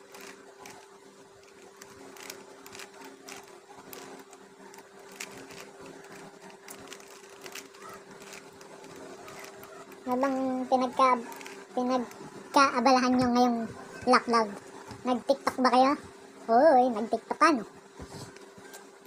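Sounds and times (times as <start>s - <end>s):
plastic clicks of puzzle cube turning: 0.0s - 10.4s, 11.2s - 12.2s
low electrical hum: 0.0s - 19.0s.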